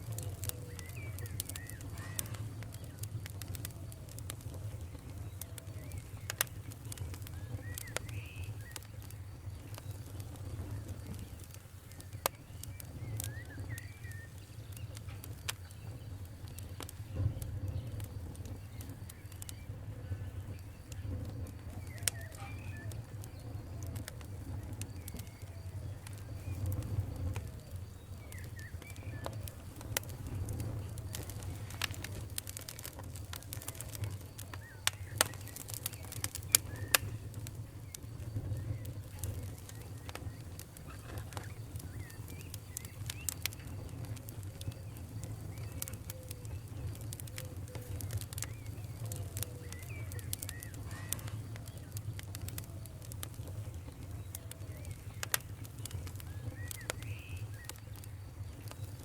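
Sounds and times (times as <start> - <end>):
faint squeaky whistles: 0.0 - 59.0
fire pops and snaps: 0.0 - 59.0
low fire rumble: 0.0 - 59.0
wood fire crackling: 0.0 - 59.0.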